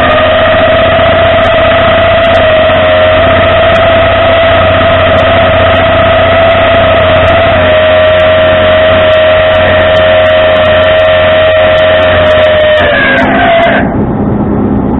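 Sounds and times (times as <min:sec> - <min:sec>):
constant engine whine: 0:00.0 - 0:14.9
truck engine running: 0:00.0 - 0:14.9.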